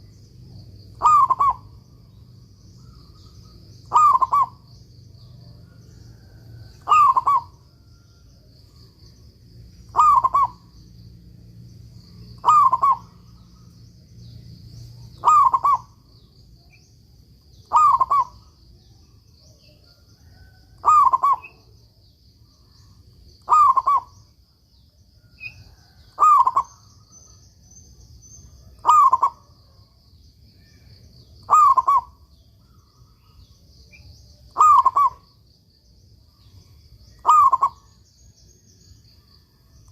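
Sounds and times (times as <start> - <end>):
dove cooing: 0.9 - 2.1, 2.8 - 8.0, 9.9 - 10.8, 12.1 - 13.7, 15.0 - 16.0, 17.6 - 18.5, 19.6 - 21.7, 23.4 - 24.2, 25.4 - 26.9, 28.6 - 29.8, 30.7 - 32.2, 34.5 - 35.2, 37.2 - 37.9.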